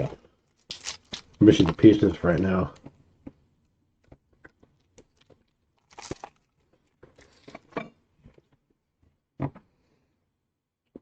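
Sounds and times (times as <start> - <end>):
candy wrappers crinkling: 0.5 - 2.0, 4.5 - 7.6
soft chewing: 2.7 - 8.6.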